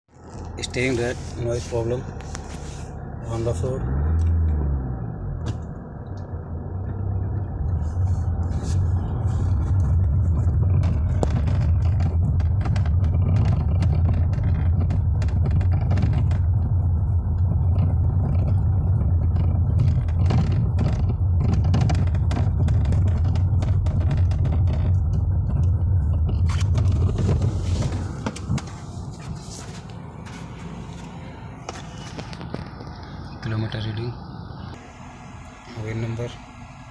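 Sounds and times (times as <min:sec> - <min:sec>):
car driving rumble: 0:00.1 - 0:36.9
knocks and rattles: 0:08.4 - 0:29.5.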